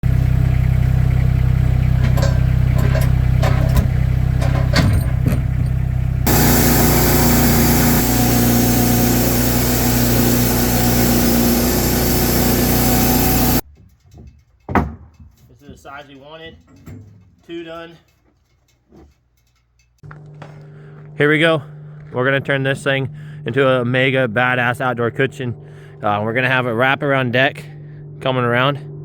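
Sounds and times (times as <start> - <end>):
engine running under load: 0.0 - 13.6, 20.1 - 29.0
bright hissy engine: 6.2 - 13.6.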